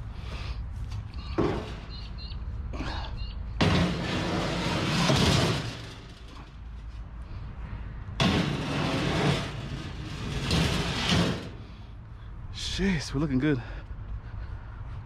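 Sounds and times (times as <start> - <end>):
ramps scraping and clattering: 0.9 - 2.2, 3.6 - 7.4, 8.2 - 12.0.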